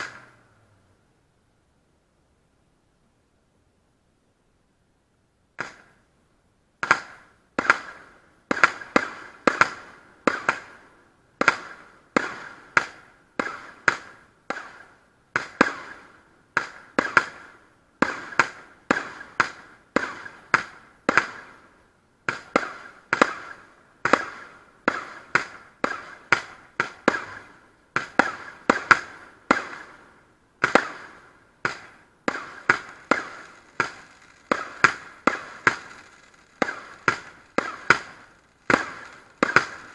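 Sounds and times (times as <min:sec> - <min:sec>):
fireworks sharp bangs: 0:00.0 - 0:00.4, 0:05.6 - 0:06.0, 0:06.8 - 0:39.9.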